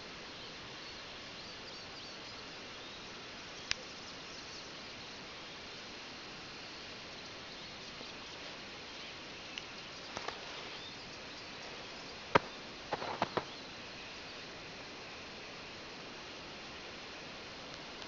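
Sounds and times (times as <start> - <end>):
faint hiss: 0.0 - 18.0
sharp clicks: 12.4 - 13.6.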